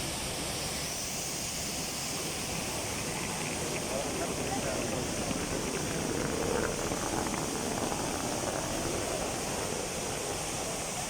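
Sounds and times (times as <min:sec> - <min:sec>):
traffic: 0:00.2 - 0:11.0
crowd hubbub: 0:02.6 - 0:11.0
faint voices: 0:02.6 - 0:11.0.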